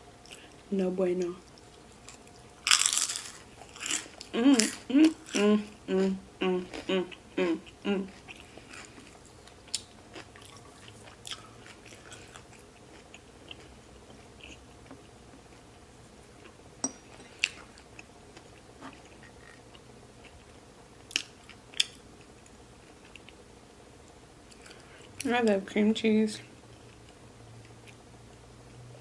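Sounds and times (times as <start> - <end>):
person chewing food: 0.2 - 0.7, 1.4 - 23.4
person humming or mumbling: 4.3 - 8.2.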